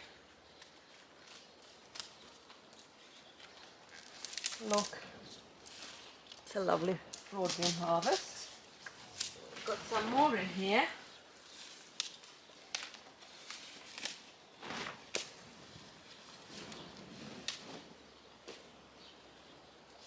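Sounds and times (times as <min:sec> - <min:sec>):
plants rustling: 0:00.0 - 0:20.0
bean pods snapping: 0:00.6 - 0:10.0, 0:11.6 - 0:14.3.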